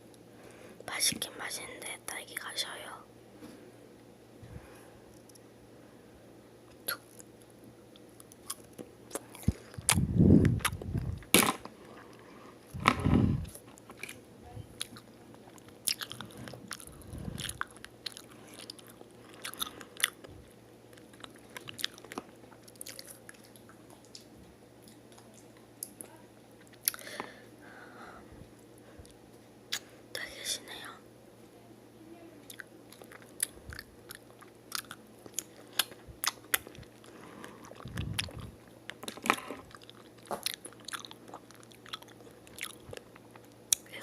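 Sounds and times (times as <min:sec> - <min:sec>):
strawberries bitten and chewed: 0:06.7 - 0:14.2, 0:14.8 - 0:27.3, 0:32.5 - 0:44.0
wet mouth clicks: 0:09.1 - 0:11.5, 0:37.8 - 0:38.5.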